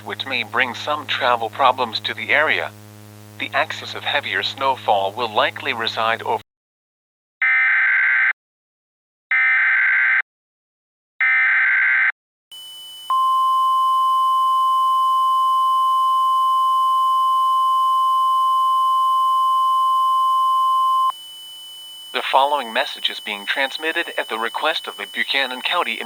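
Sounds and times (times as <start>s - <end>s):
steady pure alarm tone: 0.0s - 6.4s, 12.5s - 26.0s
digital data screech: 22.2s - 26.0s.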